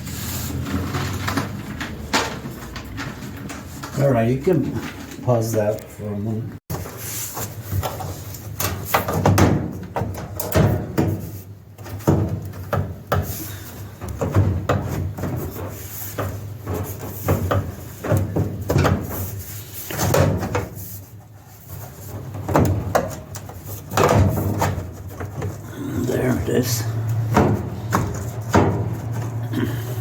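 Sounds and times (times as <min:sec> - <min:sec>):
metal parts knocking and rattling: 0:00.7 - 0:05.2, 0:21.6 - 0:30.0.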